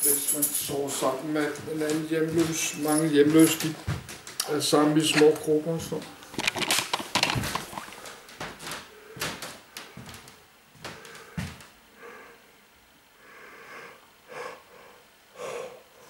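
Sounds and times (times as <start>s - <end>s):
faint shuffling: 0.0s - 11.7s
objects knocking and clicking: 6.3s - 8.0s.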